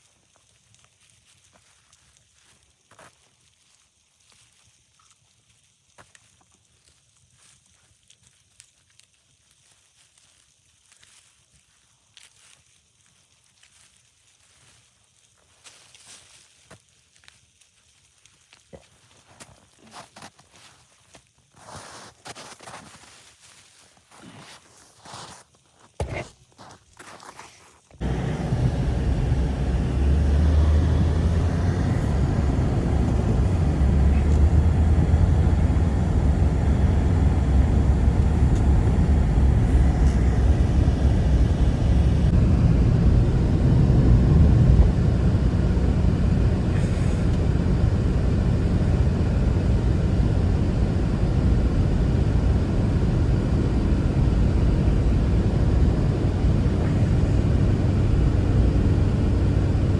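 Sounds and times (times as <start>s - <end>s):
blizzard wind rumbling: 28.0s - 59.9s
wind buffeting microphone: 28.0s - 59.9s.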